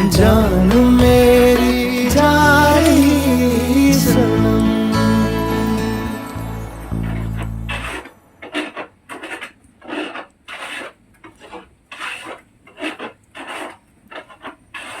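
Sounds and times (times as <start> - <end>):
rasping scrapes: 7.2 - 15.0.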